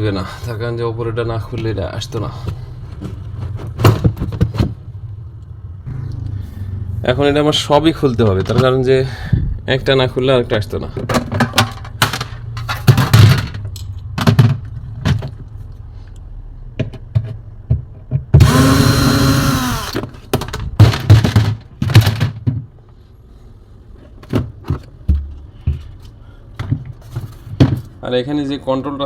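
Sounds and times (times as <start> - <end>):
refrigerator panels knocking and clattering: 3.5 - 4.8, 20.4 - 22.7
cordless drill running: 18.4 - 20.0.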